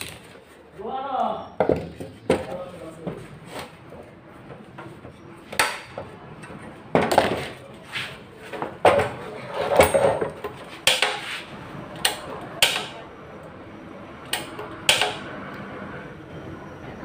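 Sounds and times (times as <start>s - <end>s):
metal stove parts clattering: 8.6s - 11.4s.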